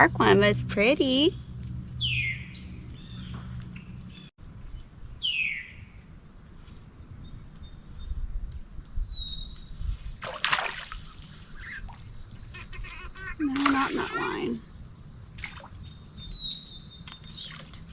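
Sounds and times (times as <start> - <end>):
birds whistling: 2.0 - 4.3, 11.4 - 14.7, 15.8 - 17.6
water splash: 10.2 - 11.3, 13.4 - 14.6, 15.4 - 15.8.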